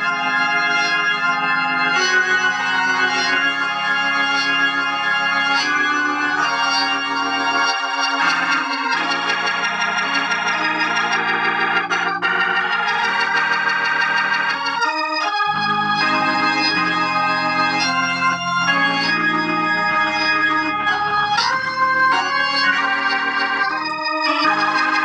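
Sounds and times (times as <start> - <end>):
organ playing sustained chords: 0.0 - 25.0
bass line: 15.4 - 24.4.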